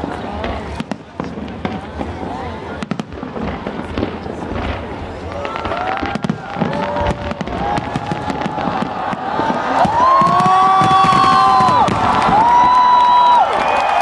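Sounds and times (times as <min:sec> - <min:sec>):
fireworks bursting and crackling: 0:00.0 - 0:14.0
crowd shouting and whooping: 0:05.3 - 0:14.0.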